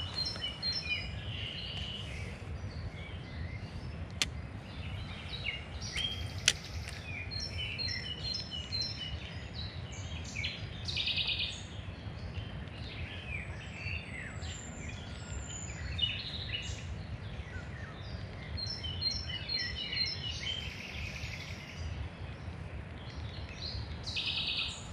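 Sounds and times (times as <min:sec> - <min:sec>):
songbirds singing and calling: 0:00.0 - 0:24.9
steady low rumble: 0:00.0 - 0:24.9.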